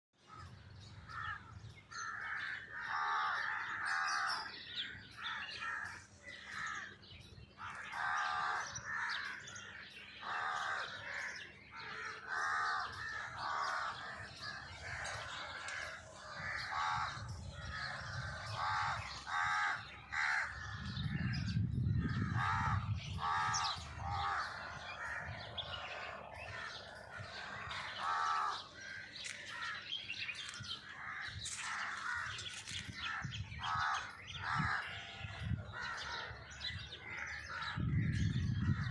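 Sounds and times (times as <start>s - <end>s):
birds calling and chirping: 0.2s - 38.9s.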